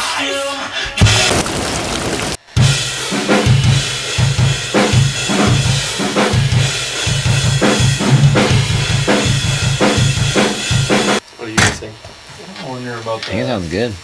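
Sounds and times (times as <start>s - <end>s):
bass drum thumps: 6.4s - 11.1s.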